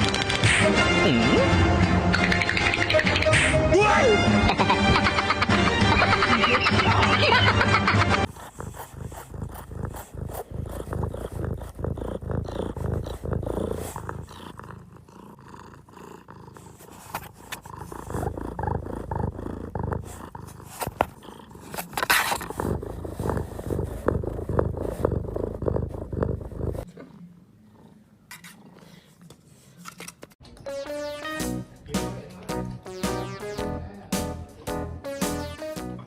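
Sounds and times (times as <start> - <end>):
animal rumbling: 8.3 - 29.1.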